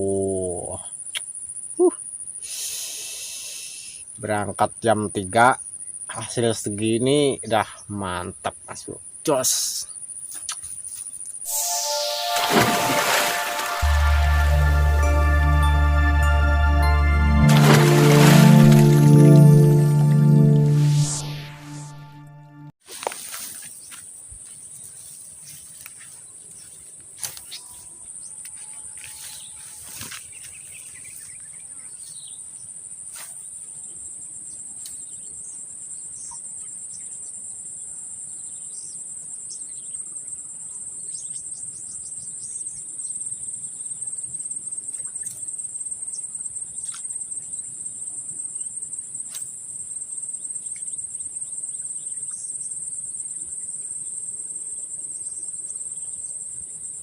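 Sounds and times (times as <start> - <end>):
insect chorus trilling: 0.0 - 13.3.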